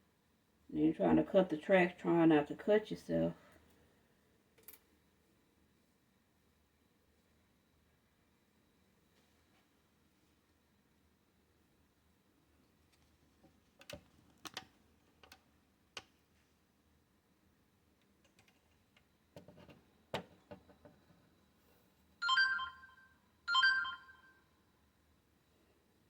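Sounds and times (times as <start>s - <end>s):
short electronic chime: 23.5s - 24.3s.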